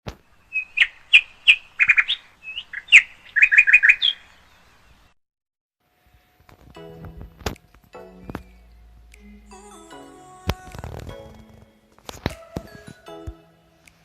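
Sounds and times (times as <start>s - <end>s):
bird chirping: 0.1s - 5.2s, 7.9s - 9.5s.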